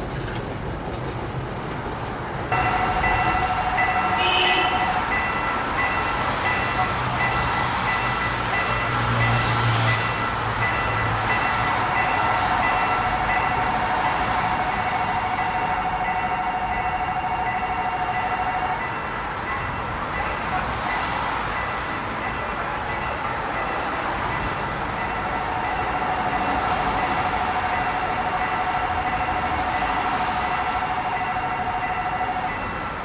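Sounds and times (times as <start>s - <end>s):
level crossing bell dinging: 2.6s - 7.6s, 12.0s - 19.0s.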